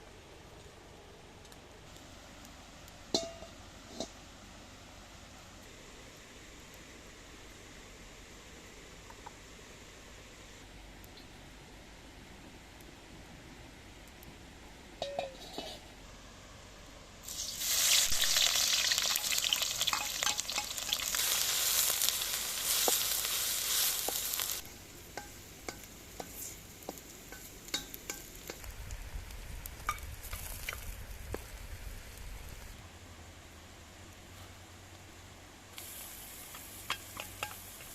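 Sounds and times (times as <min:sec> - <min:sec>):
food sizzling in hot oil: 0:17.2 - 0:28.8, 0:35.8 - 0:37.9
oil crackling and popping: 0:17.2 - 0:31.5, 0:35.8 - 0:37.9.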